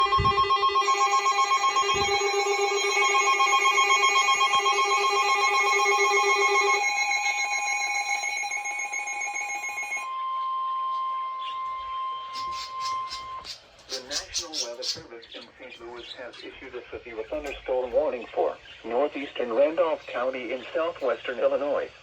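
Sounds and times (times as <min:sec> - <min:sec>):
pulsing electronic alert tone: 0:00.0 - 0:13.5.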